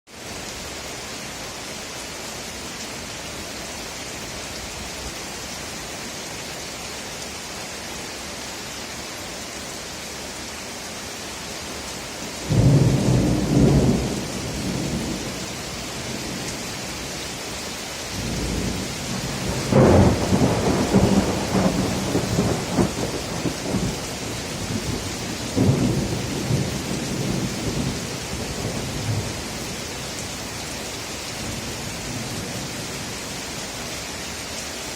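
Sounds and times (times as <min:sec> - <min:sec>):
heavy rain hissing: 0:00.1 - 0:34.9
thunder clap and rumble: 0:12.5 - 0:15.4, 0:18.2 - 0:24.0, 0:25.6 - 0:28.0.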